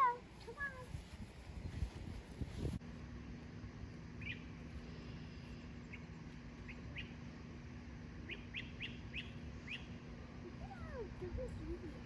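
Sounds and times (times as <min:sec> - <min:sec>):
faint hum: 0:00.0 - 0:12.0
bird chirping: 0:08.3 - 0:10.0.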